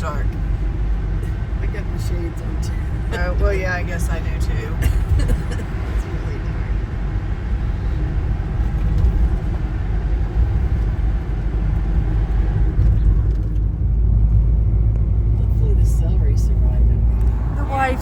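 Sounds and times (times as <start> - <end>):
road and engine rumble: 0.0 - 18.0.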